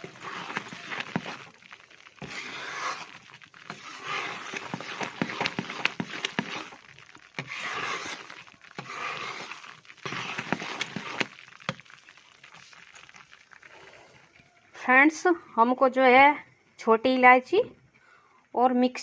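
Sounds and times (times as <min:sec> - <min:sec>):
spoon stirring and scraping pan: 0:00.0 - 0:14.3.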